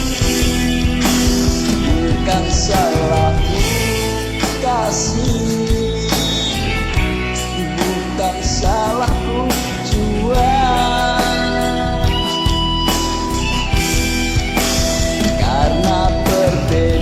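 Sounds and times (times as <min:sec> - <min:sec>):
full band with drum beat: 0:00.0 - 0:17.0
pitch-bending lead melody: 0:00.0 - 0:17.0.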